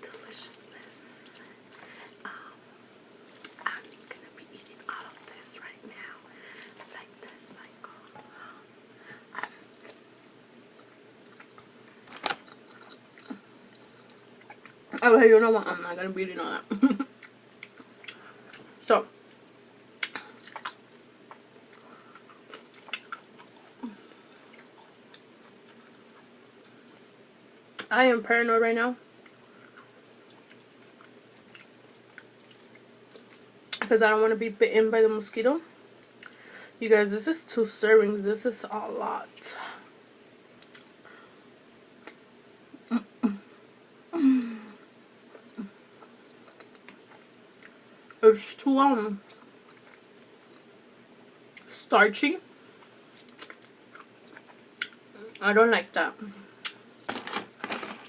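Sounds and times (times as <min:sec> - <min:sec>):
wet chewing and lip smacks: 0:09.3 - 0:14.9, 0:20.0 - 0:23.7, 0:29.2 - 0:33.8, 0:40.6 - 0:40.9, 0:45.3 - 0:48.2, 0:52.8 - 0:55.1, 0:56.6 - 0:56.8.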